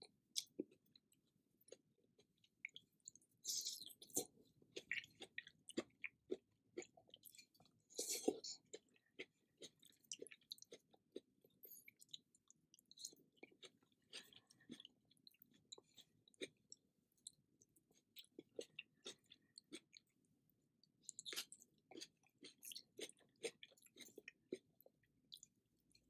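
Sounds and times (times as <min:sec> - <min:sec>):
person chewing: 0:03.4 - 0:12.2, 0:12.8 - 0:16.6, 0:21.1 - 0:24.7.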